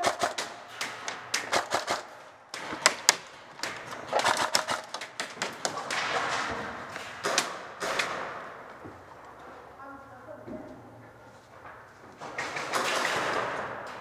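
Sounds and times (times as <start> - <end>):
airsoft guns firing: 0.0 - 8.7, 12.4 - 14.0.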